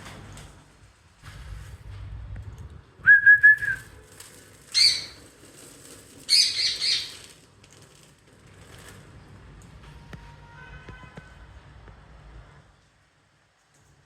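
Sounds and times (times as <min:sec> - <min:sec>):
parrot whistle: 0:03.0 - 0:03.8
parrot screeches: 0:04.7 - 0:05.2.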